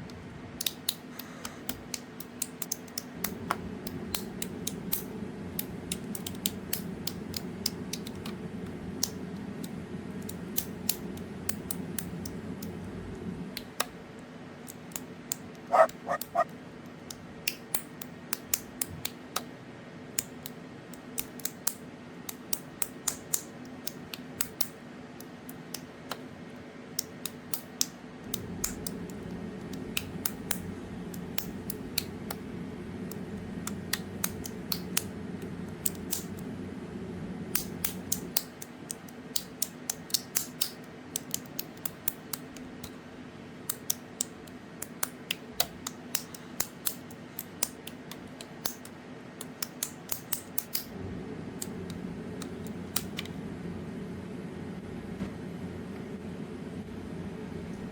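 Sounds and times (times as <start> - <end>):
low steady hum: 3.1 - 14.2, 15.7 - 16.4, 28.1 - 39.9, 48.2 - 57.9.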